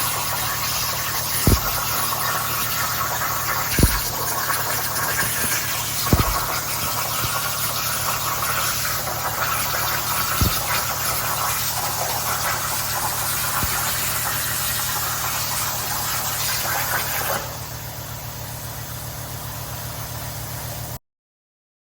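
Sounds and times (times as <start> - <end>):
plasma torch hissing: 0.0 - 17.7
sharp clicks: 1.5 - 2.1, 3.7 - 4.3, 5.2 - 7.4, 10.4 - 10.8, 13.6 - 14.0
low hum: 1.5 - 2.6.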